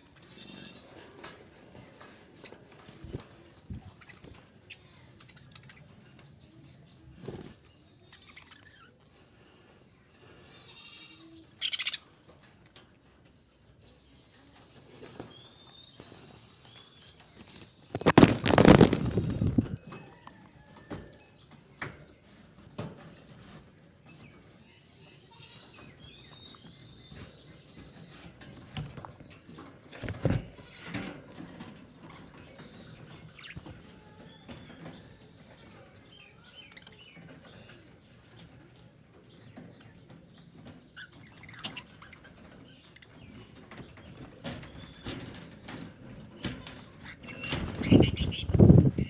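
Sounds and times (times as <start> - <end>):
budgerigars chirping: 11.6 - 12.1, 47.3 - 49.0.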